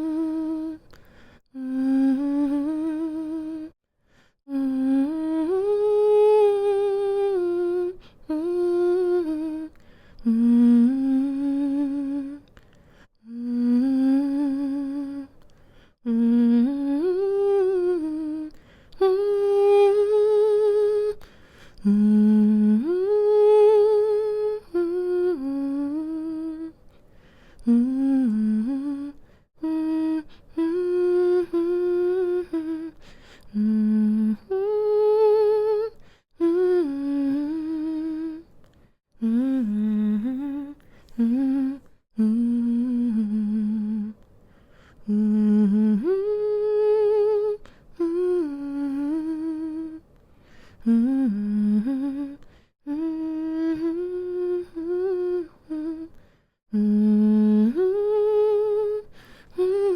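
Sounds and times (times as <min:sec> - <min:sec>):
woman humming a lullaby: 0:00.0 - 0:00.9, 0:13.2 - 0:15.3, 0:27.6 - 0:38.5, 0:50.8 - 0:59.9.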